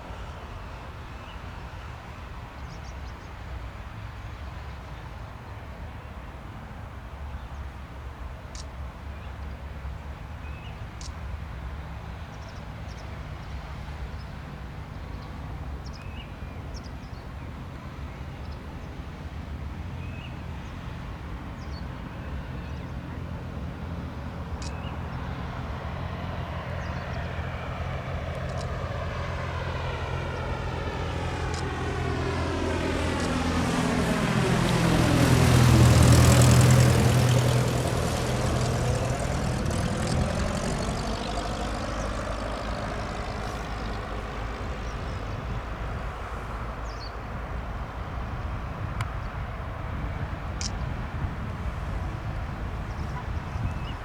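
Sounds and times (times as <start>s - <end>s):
propeller plane engine drone: 0.0s - 54.0s
faint short chirps and ticks: 24.6s - 24.9s.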